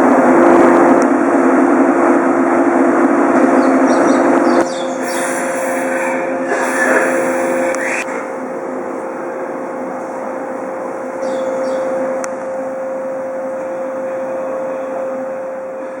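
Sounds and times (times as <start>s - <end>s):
electric train equipment hum: 0.0s - 16.0s
bird chirps: 3.6s - 8.2s, 11.2s - 11.9s.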